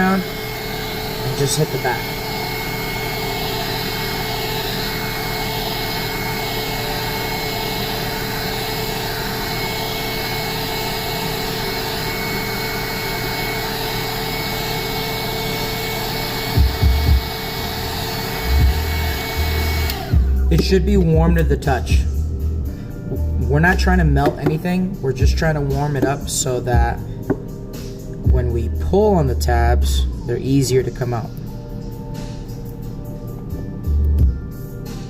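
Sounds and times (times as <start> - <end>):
heat gun blowing: 0.0 - 20.3.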